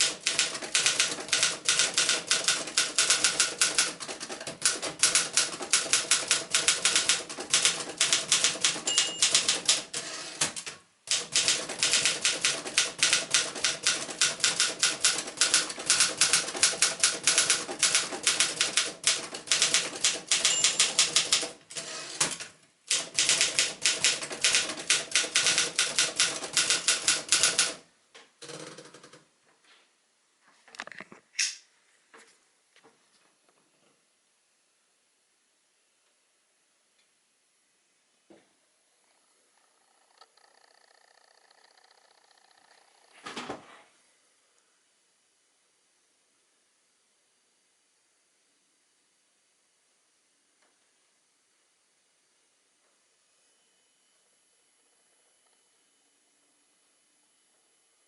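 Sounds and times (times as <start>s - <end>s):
typewriter keystroke clacks: 0.0s - 21.6s, 22.2s - 27.8s
typewriter bell ring: 5.0s - 9.8s, 19.5s - 21.5s.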